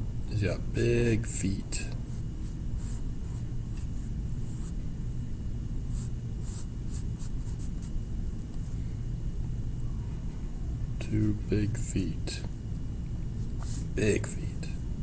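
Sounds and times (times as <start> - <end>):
steady low hum: 0.0 - 15.0
pencil scratching on paper: 2.1 - 4.8, 5.9 - 7.9.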